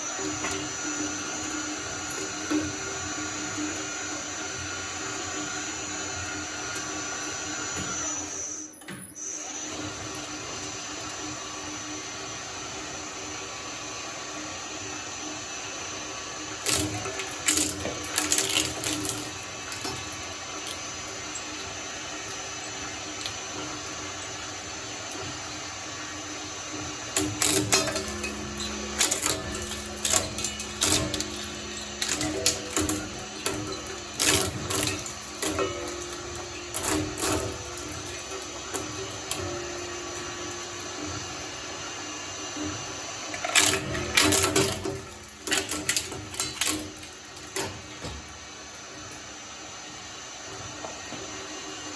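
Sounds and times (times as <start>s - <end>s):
shredder motor humming: 0.0s - 51.9s
shredder crunching material: 16.5s - 24.7s, 26.6s - 41.8s, 43.3s - 48.4s.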